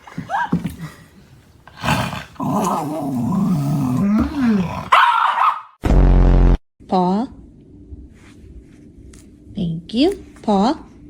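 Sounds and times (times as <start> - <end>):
dog growling: 1.7 - 5.0.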